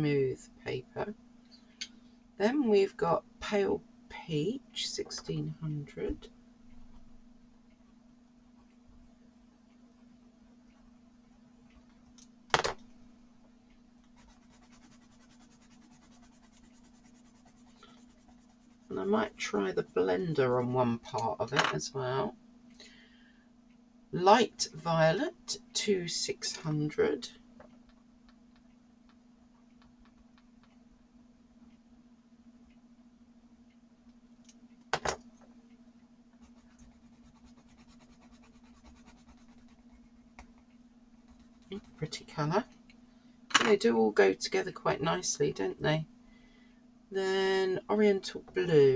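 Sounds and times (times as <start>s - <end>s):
faint steady hum: 0.0s - 48.9s
pencil scratching on paper: 14.2s - 19.0s, 36.4s - 40.6s.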